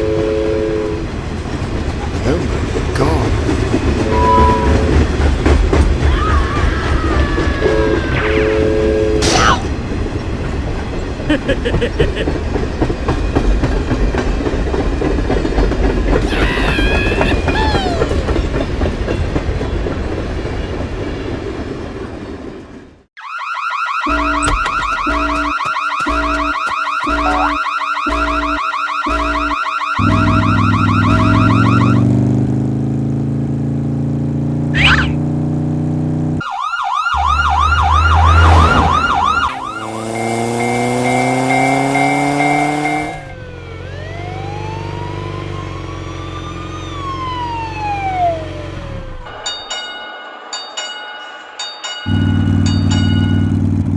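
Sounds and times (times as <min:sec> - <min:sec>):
fast-warbling alarm tone: 0:03.9 - 0:05.5, 0:23.2 - 0:32.1, 0:34.7 - 0:35.2, 0:36.4 - 0:44.7
wailing siren: 0:03.9 - 0:09.7, 0:16.2 - 0:18.4, 0:23.2 - 0:32.4, 0:36.4 - 0:49.3
rising and falling whistle sweeps: 0:04.0 - 0:05.1, 0:07.6 - 0:09.2, 0:34.7 - 0:35.2, 0:37.1 - 0:41.7
pulsing beat: 0:24.1 - 0:32.0.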